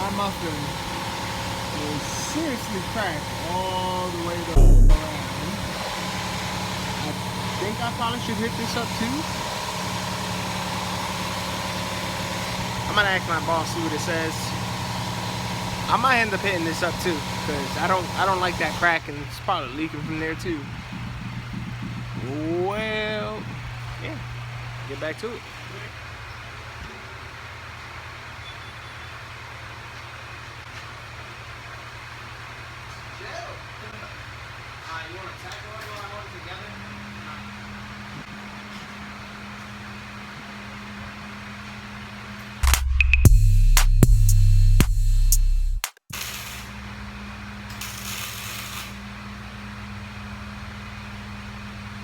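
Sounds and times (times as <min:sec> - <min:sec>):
machine humming: 0:00.0 - 0:25.9
background music with a beat: 0:04.6 - 0:05.0, 0:42.6 - 0:46.0
steady hiss: 0:46.1 - 0:46.8, 0:47.8 - 0:49.1.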